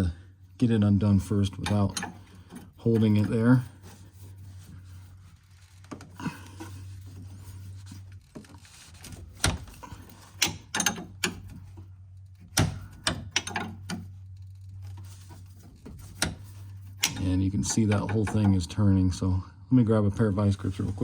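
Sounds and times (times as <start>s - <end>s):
wrench metal clicks and knocks: 1.4s - 3.4s, 9.1s - 14.7s, 16.0s - 18.6s.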